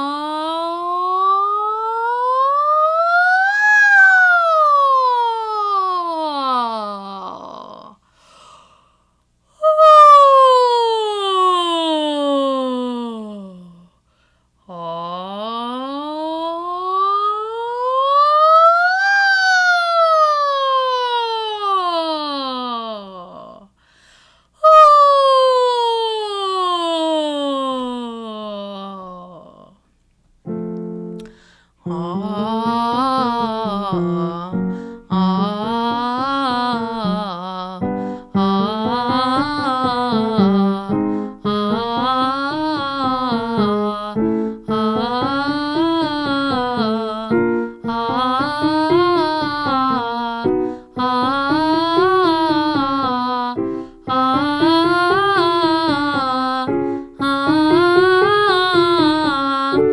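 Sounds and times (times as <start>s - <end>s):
woman singing vocal scales: 0.0s - 8.0s, 9.6s - 14.0s, 14.7s - 23.8s, 24.6s - 29.8s, 30.5s - 59.9s
piano: 30.4s - 59.9s.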